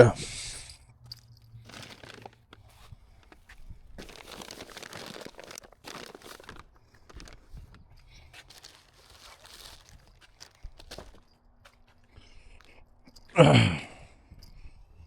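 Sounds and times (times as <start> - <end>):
plastic bag crinkling: 1.0 - 11.9.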